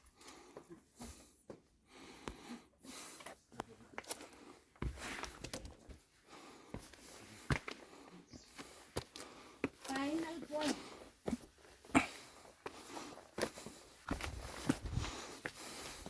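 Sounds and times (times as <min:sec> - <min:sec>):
person breathing: 0:00.0 - 0:03.4, 0:06.2 - 0:09.8, 0:10.8 - 0:16.0
footsteps tapping: 0:08.6 - 0:16.0.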